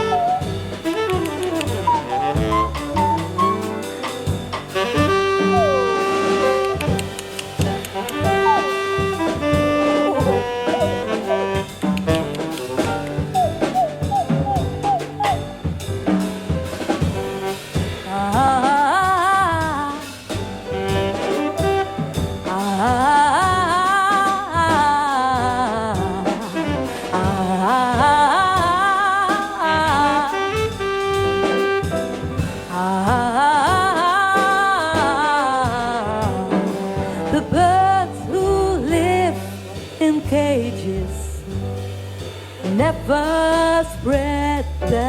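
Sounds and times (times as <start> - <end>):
double bass: 0.0 - 45.0
drum kit: 0.0 - 45.0
piano: 0.0 - 45.0
wavering lead melody: 13.3 - 15.5.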